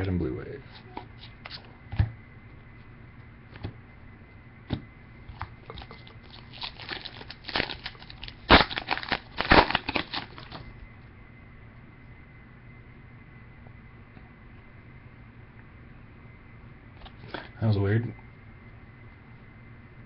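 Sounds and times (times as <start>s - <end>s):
foil wrapper crinkling: 5.7s - 10.6s.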